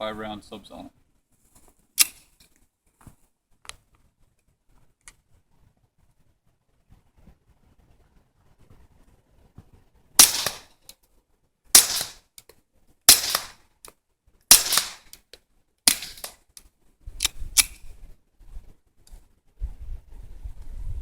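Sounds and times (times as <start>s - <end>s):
suppressed gunshots: 10.2s - 10.7s, 11.7s - 12.2s, 13.1s - 13.6s, 14.5s - 15.1s, 15.9s - 16.4s.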